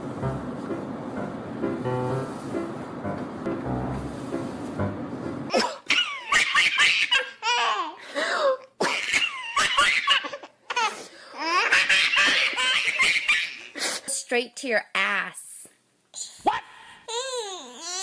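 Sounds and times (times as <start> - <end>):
background music: 0.0 - 5.4
baby laughing: 5.5 - 8.0, 8.8 - 13.8.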